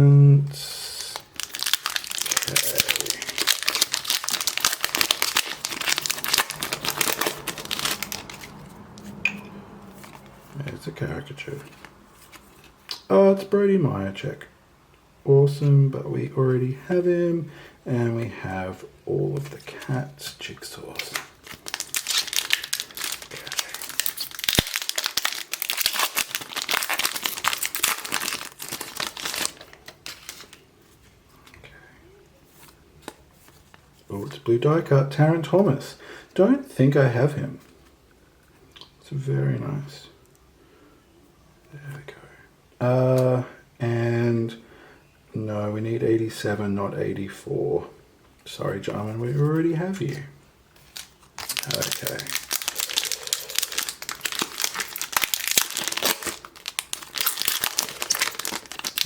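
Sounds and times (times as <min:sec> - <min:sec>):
wrapper crinkling and tearing: 0:01.0 - 0:09.2, 0:20.9 - 0:30.6, 0:50.8 - 0:59.0.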